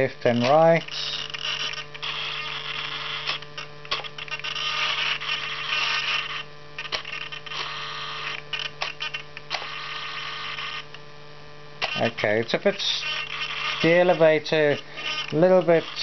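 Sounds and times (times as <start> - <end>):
servos buzzing: 0.0 - 16.0
steady electrical hum: 0.0 - 16.0
sharp clicks: 0.4 - 6.2, 6.8 - 11.0, 11.8 - 12.2.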